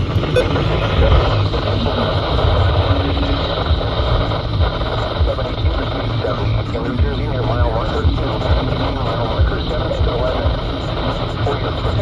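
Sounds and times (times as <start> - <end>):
heavy low rumble: 0.0 - 12.0
faint synthesized announcer voice: 5.0 - 12.0.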